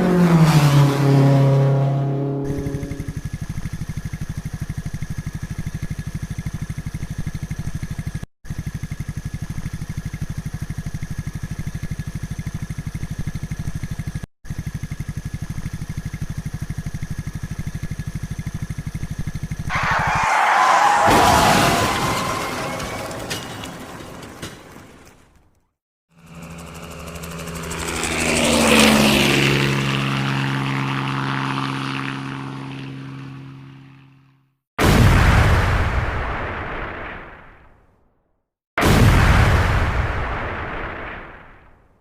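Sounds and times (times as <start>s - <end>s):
vehicle engine running: 0.0s - 21.0s, 26.1s - 34.5s.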